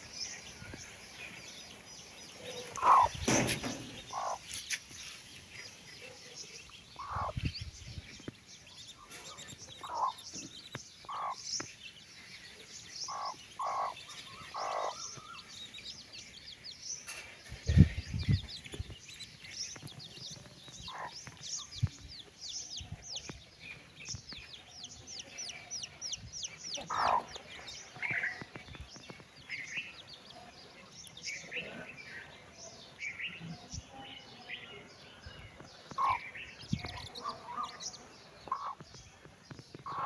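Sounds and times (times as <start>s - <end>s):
chicks peeping: 0.0s - 40.0s
hen clucking: 2.6s - 4.6s, 7.0s - 7.5s, 9.0s - 11.4s, 13.1s - 15.5s, 20.8s - 21.7s, 24.9s - 28.6s, 35.9s - 38.8s.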